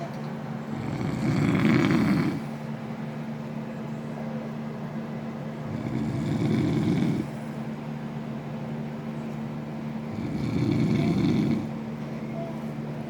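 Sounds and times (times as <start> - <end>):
steady low hum: 0.0 - 13.0
man snoring loudly: 0.7 - 2.4, 5.7 - 7.3, 10.1 - 11.7.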